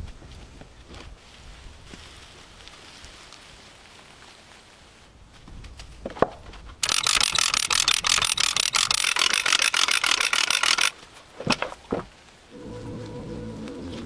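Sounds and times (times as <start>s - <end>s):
rapid mechanical ratchet clicking: 6.8s - 11.0s.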